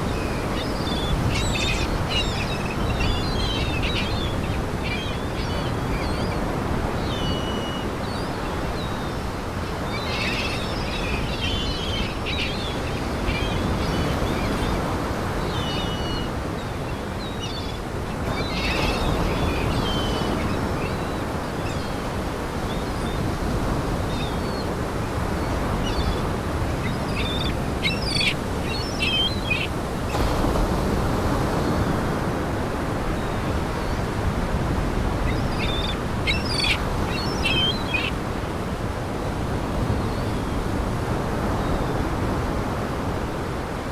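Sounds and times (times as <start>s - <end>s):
seagulls calling: 0.0s - 30.4s, 33.2s - 39.2s.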